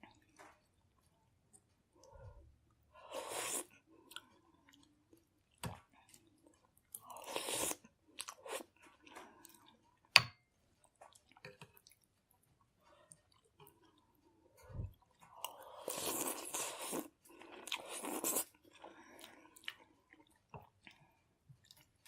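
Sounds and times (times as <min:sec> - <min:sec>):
person slurping soup: 0:03.0 - 0:03.7, 0:07.1 - 0:07.8, 0:15.5 - 0:18.5
person chewing: 0:03.0 - 0:10.1, 0:13.0 - 0:22.0.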